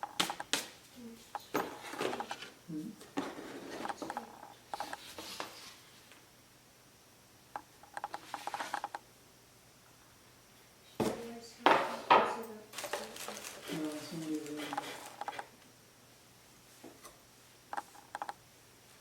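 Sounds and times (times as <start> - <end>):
objects rubbed and clicked: 13.5 - 15.5.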